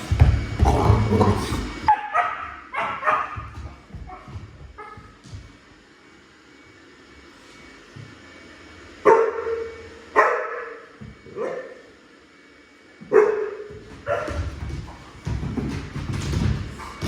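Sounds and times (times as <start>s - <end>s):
dog barking: 1.9s - 5.1s, 9.0s - 11.8s, 13.1s - 14.5s.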